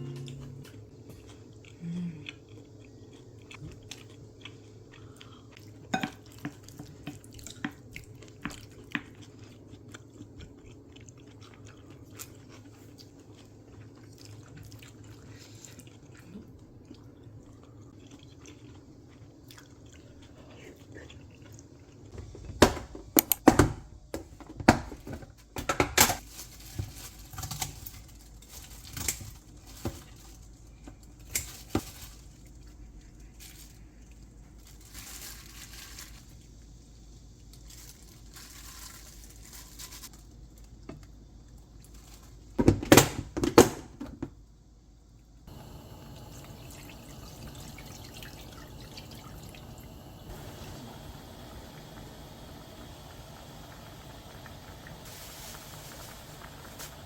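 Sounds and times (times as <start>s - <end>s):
steady low hum: 0.0s - 6.2s, 45.2s - 57.0s.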